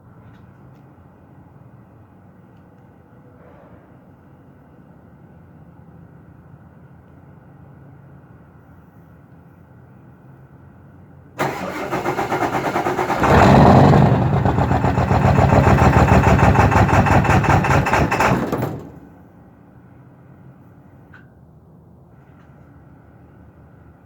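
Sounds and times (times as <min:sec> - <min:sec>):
starter motor cranking: 0:11.4 - 0:19.1
diesel engine running: 0:11.4 - 0:19.2.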